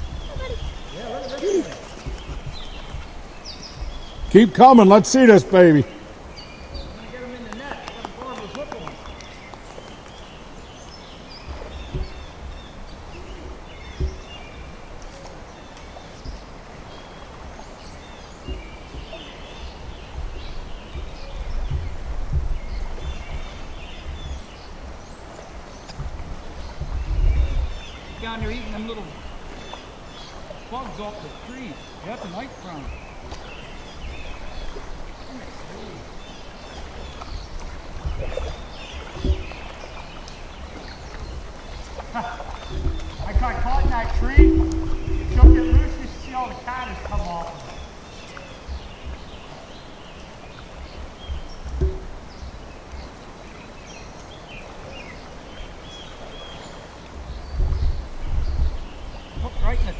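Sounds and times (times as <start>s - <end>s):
wind rumbling on microphone: 0.0s - 4.4s, 8.7s - 30.6s, 36.1s - 47.2s, 57.1s - 59.9s
stream flowing: 0.0s - 57.4s
small birds chirping: 0.0s - 59.9s
dull thumps: 42.6s - 46.5s
low outdoor rumble: 42.7s - 46.4s.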